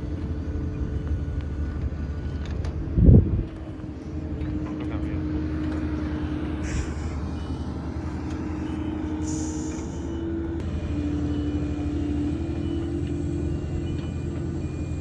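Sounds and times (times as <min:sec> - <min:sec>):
engine droning: 0:00.0 - 0:15.0.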